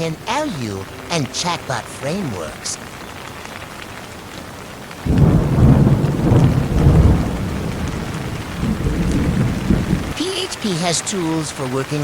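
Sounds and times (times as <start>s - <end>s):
steady rain falling: 0.0s - 12.0s
thunder rumbling: 5.0s - 10.6s.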